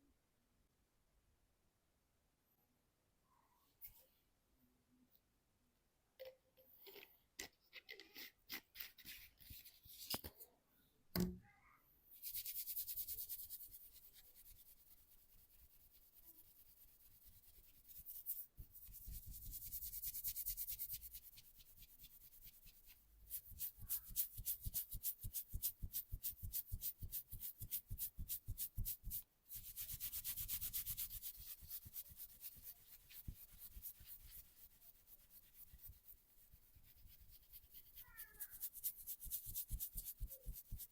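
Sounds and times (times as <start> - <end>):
hands rubbing skin and hair: 12.2 - 40.9.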